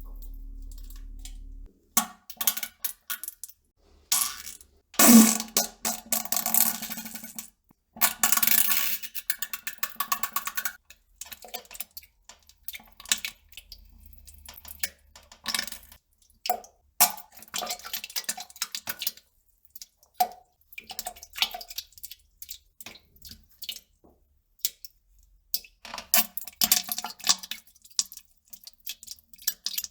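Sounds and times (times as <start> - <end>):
farting sputters: 5.0 - 5.4.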